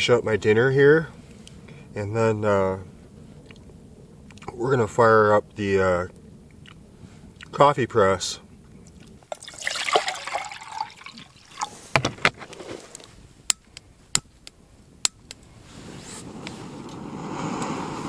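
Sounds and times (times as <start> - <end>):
camp stove burner hissing: 0.0 - 9.3, 11.4 - 18.0
water pouring into a pot: 9.3 - 11.7.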